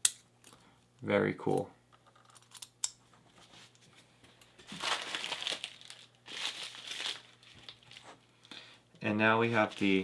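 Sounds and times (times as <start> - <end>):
packaging crinkling and rustling: 4.6 - 8.4, 9.4 - 10.0.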